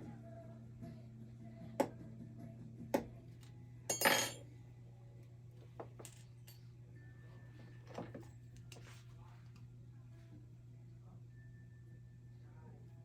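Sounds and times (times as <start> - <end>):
metal tools clicking and clinking: 3.9 - 4.4.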